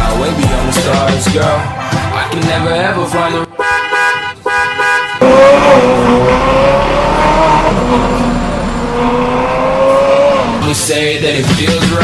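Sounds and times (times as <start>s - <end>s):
car horn: 3.3s - 8.3s
car engine revving hard: 5.2s - 11.0s.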